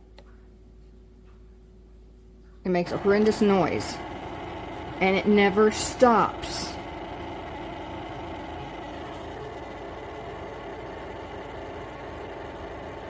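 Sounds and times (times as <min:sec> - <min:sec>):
robot vacuum mechanical drone: 0:02.9 - 0:13.0.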